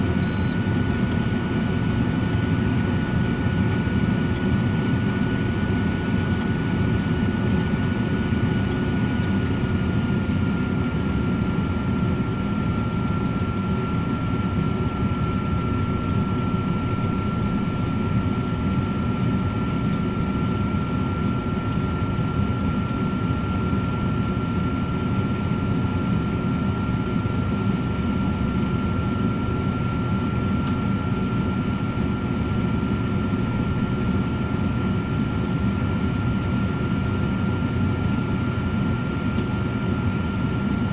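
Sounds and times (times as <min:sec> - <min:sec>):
air fryer fan whoosh: 0:00.0 - 0:09.8.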